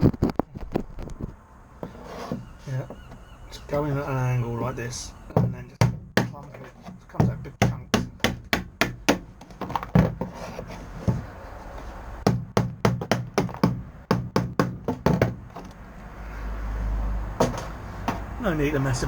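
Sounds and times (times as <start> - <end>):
hammer striking chisel on metal: 7.2 - 9.2.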